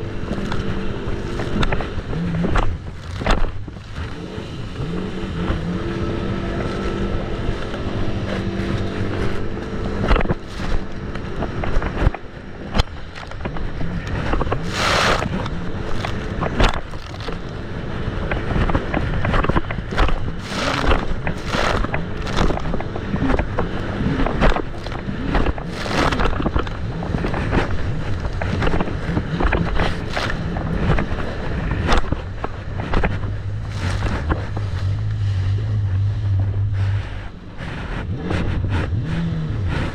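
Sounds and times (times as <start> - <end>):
jet ski engine running: 0.0 - 39.9
wind gusts on microphone: 0.0 - 39.9.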